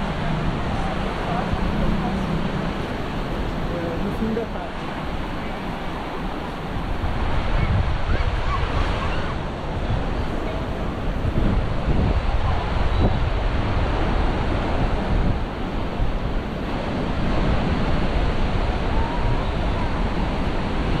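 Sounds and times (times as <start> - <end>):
surf washing onto beach: 0.0 - 21.0
wind buffeting microphone: 0.0 - 21.0.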